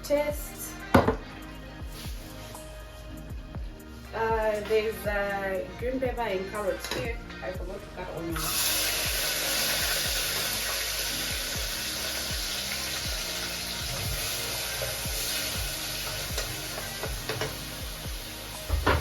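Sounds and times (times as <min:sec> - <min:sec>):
background music low beat: 0:00.0 - 0:19.0
vegetables sizzling in oil: 0:08.4 - 0:19.0.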